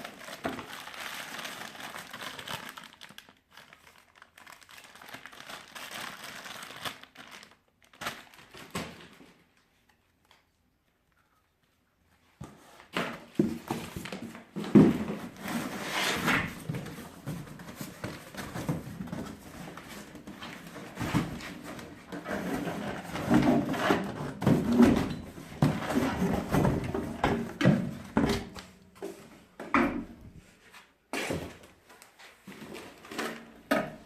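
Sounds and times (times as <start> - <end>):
packaging rustling: 0.0 - 9.4, 13.4 - 27.6.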